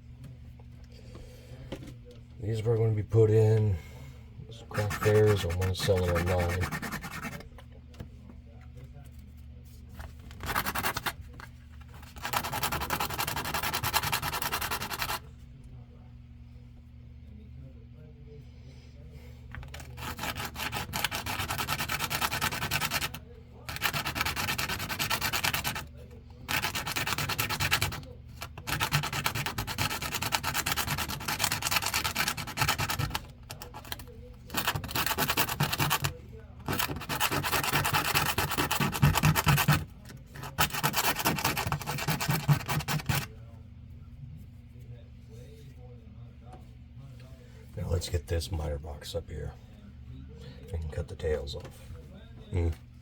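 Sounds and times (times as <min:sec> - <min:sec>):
sandpaper rasping on spinning wood: 0:04.7 - 0:07.4, 0:36.7 - 0:43.3.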